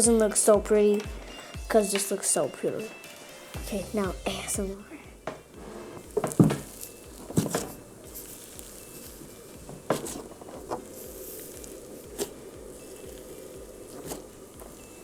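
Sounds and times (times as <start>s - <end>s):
slime squished by hand: 6.3s - 14.4s.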